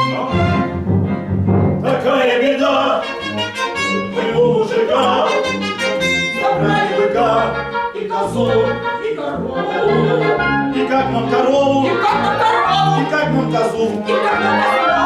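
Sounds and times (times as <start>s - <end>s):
bouncing bass line: 0.0s - 2.1s
bowed strings: 0.0s - 2.2s.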